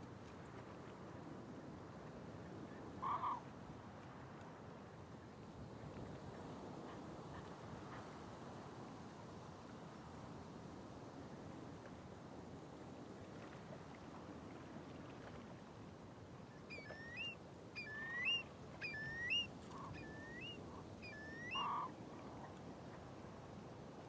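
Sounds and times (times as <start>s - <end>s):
bird whistling call: 16.7s - 21.8s.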